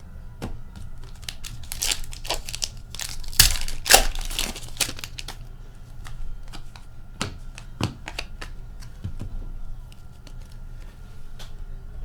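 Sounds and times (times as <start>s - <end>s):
card pack packaging tearing: 1.0s - 5.4s.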